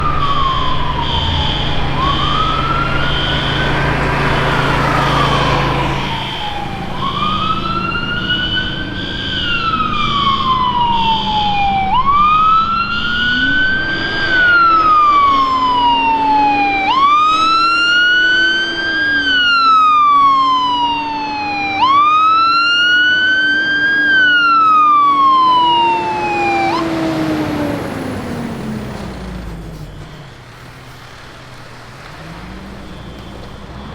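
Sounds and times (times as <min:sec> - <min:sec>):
low engine drone: 0:00.0 - 0:17.7, 0:23.1 - 0:33.9
fire truck siren wailing: 0:00.0 - 0:33.9.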